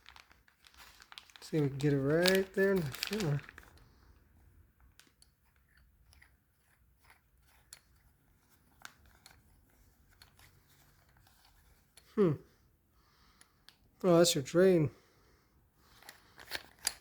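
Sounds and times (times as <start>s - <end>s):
plastic bag clicks and crackles: 0.0s - 4.0s, 4.8s - 6.3s.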